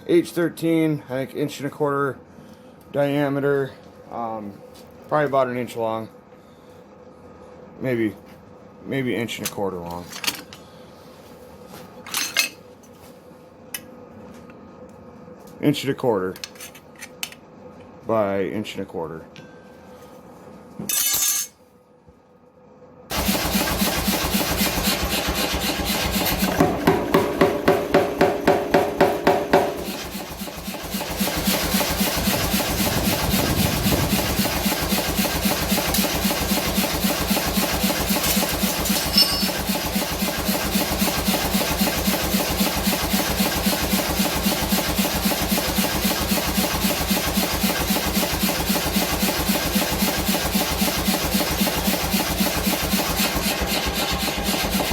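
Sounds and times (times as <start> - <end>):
power hammer pounding steel: 23.1 - 54.9.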